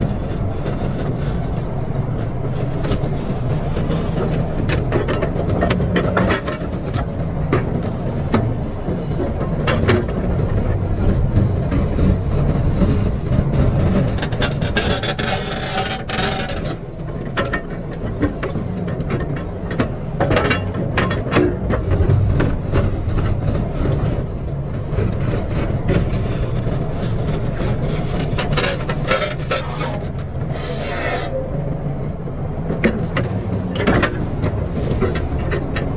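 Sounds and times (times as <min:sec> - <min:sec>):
excavator diesel engine running: 0:00.0 - 0:35.9
metallic clanks and knocks: 0:13.0 - 0:35.9
bucket scraping: 0:19.4 - 0:35.6.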